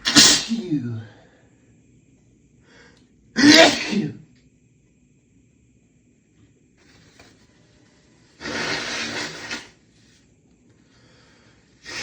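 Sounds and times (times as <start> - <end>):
person blowing nose: 8.4 - 9.8.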